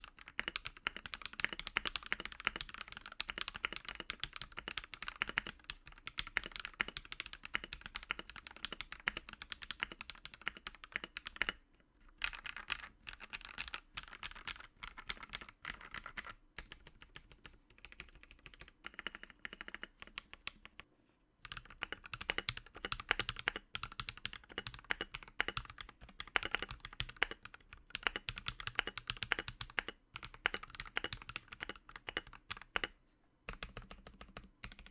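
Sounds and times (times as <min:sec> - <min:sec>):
mechanical keyboard typing: 0:00.0 - 0:20.8, 0:21.4 - 0:34.9.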